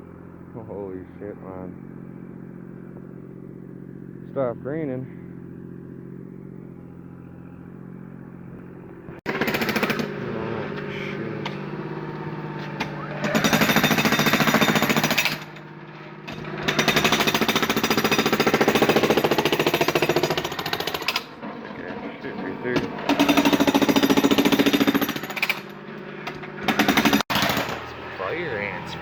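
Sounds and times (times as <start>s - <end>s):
low engine-like hum: 0.0s - 9.2s
jackhammer hammering concrete: 9.2s - 11.7s, 12.8s - 27.9s.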